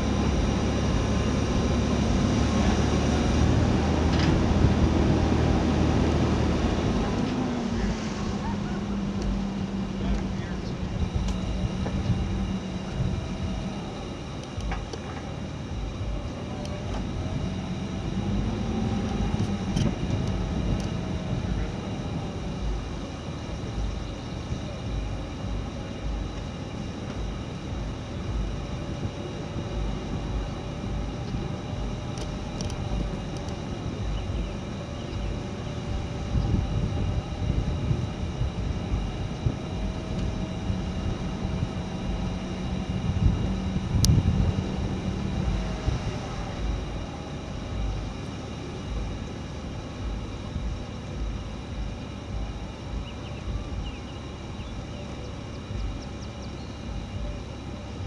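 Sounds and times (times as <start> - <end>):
low rumble: 0.0 - 58.0
motor running: 0.0 - 58.0.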